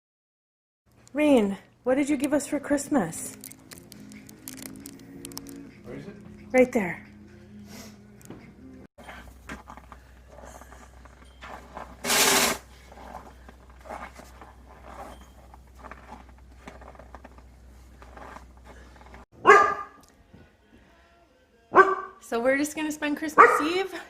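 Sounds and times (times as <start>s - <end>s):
dog barking: 19.4s - 20.0s, 21.7s - 22.2s, 23.4s - 23.9s.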